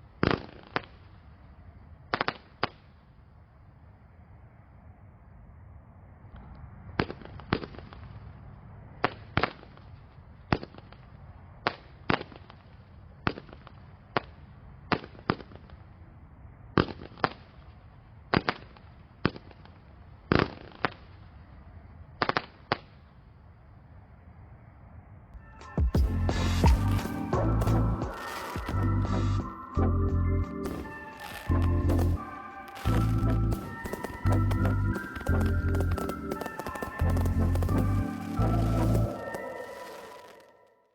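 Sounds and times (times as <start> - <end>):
firework cake sharp reports: 26.0 - 29.5, 30.6 - 40.7.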